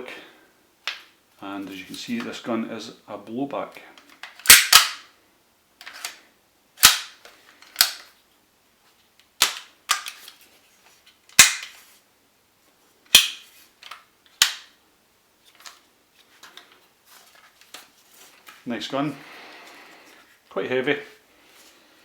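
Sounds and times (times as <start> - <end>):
airsoft rifle shots cracking: 4.4 - 5.1.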